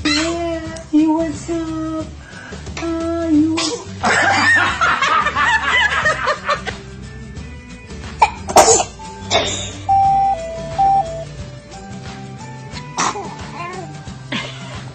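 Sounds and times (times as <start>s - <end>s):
background music: 0.0s - 14.9s
person sneezing: 3.6s - 3.9s, 8.2s - 9.7s, 12.9s - 13.4s.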